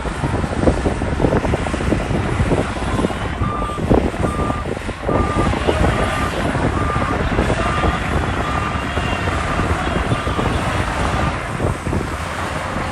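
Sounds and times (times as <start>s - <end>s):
diesel machinery rumbling: 0.0s - 12.9s
reversing alarm beeping: 3.4s - 11.4s.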